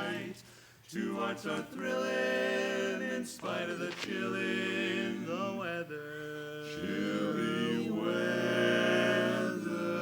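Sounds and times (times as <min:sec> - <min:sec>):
barbershop chorus singing: 0:00.0 - 0:10.0.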